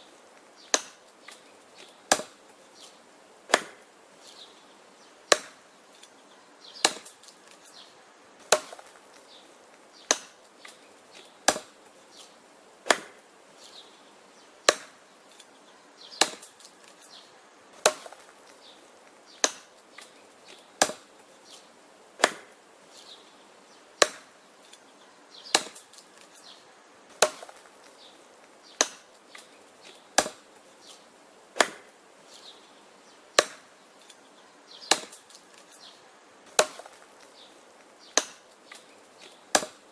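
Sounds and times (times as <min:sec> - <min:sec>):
axe chopping wood: 0:00.6 - 0:02.4, 0:03.5 - 0:03.9, 0:05.3 - 0:05.6, 0:06.8 - 0:07.6, 0:08.4 - 0:09.2, 0:10.0 - 0:13.2, 0:14.6 - 0:15.0, 0:16.2 - 0:17.0, 0:17.8 - 0:21.2, 0:22.2 - 0:22.6, 0:24.0 - 0:24.4, 0:25.5 - 0:26.3, 0:27.1 - 0:28.0, 0:28.7 - 0:31.0, 0:31.6 - 0:31.9, 0:33.4 - 0:33.8, 0:34.8 - 0:35.8, 0:36.5 - 0:37.4, 0:38.0 - 0:39.8.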